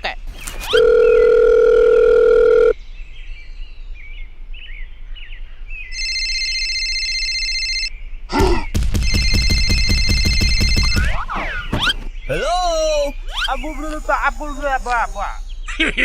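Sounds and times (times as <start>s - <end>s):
faint bird chirping: 10.9s - 16.0s.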